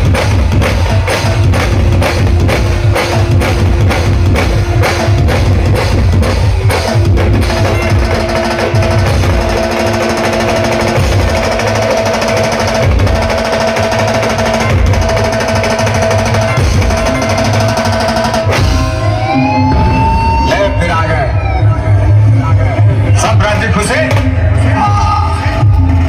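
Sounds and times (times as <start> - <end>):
heavy drumming and rolls: 0.0 - 26.0
loud band music: 0.0 - 26.0
rising siren-like tone: 18.6 - 23.1.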